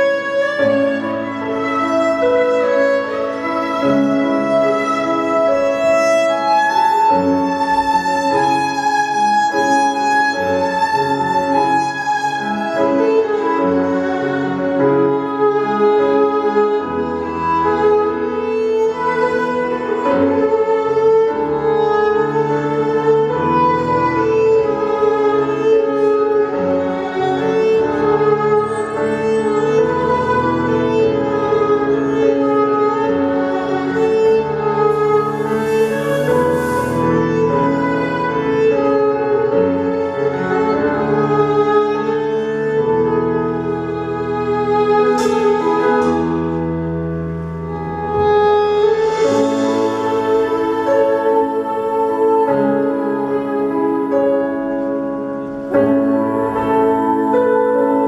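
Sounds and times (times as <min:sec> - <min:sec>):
dance music with strings and piano: 0:33.8 - 0:41.4, 0:42.2 - 0:52.9
burst of hiss: 0:35.0 - 0:37.1.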